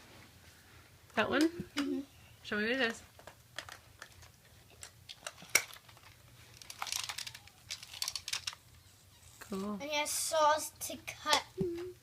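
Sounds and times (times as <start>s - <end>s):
plastic toy clicking and rattling: 3.2s - 8.8s.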